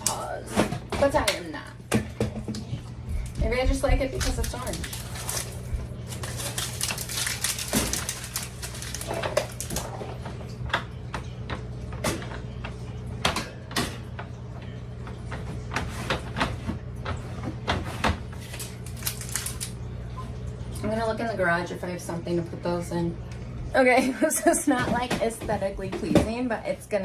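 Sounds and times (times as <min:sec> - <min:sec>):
steady low hum: 0:00.0 - 0:27.0
packaging being handled: 0:04.2 - 0:09.9, 0:18.4 - 0:19.8.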